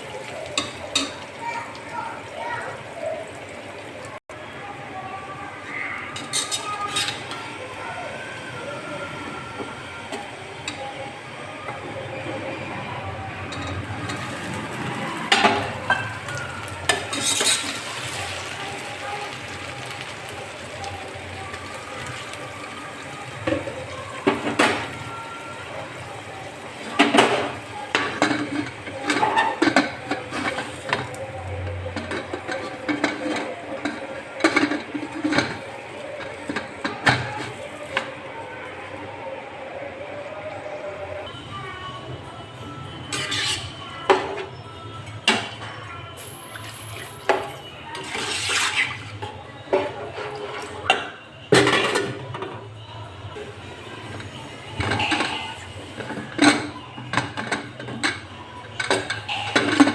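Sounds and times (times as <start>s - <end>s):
pot cooking rushing noise: 11.7s - 38.1s, 46.2s - 50.8s.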